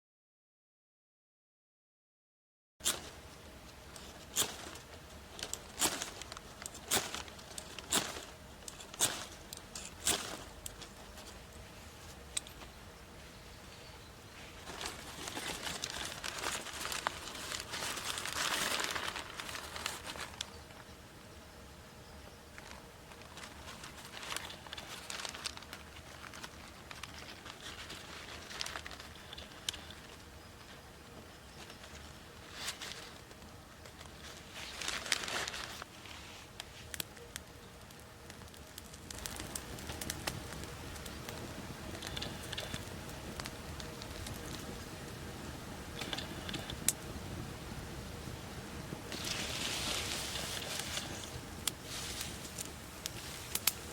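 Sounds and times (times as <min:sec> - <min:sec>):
soft steady hiss: 0:02.8 - 0:53.9
campfire crackling and popping: 0:03.8 - 0:11.0, 0:36.6 - 0:53.9.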